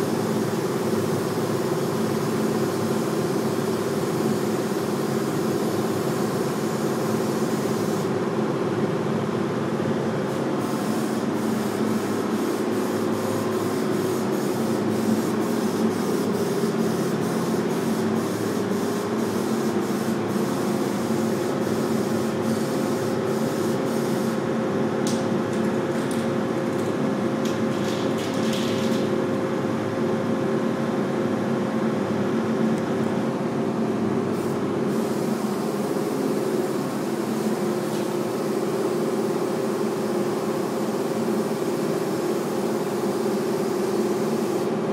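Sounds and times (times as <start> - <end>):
spray gun hissing: 0.0 - 8.2, 10.3 - 24.5, 34.3 - 44.8
air compressor running: 0.0 - 29.7, 32.5 - 44.9.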